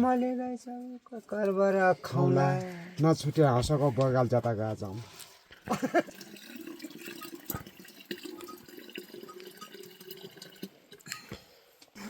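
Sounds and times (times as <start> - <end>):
water dripping and trickling: 4.8 - 11.6.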